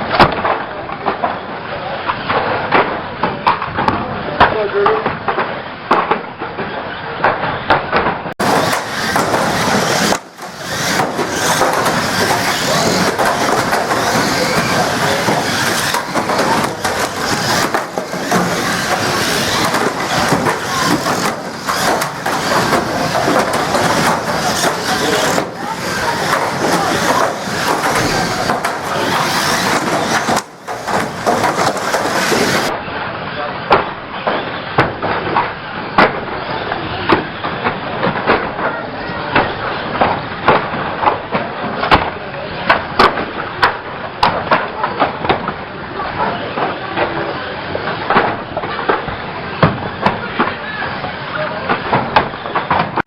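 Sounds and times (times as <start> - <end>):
metal bodywork crunching: 8.4 - 32.7
metal crashes and bangs: 8.4 - 32.7
racing car engines: 8.4 - 32.7.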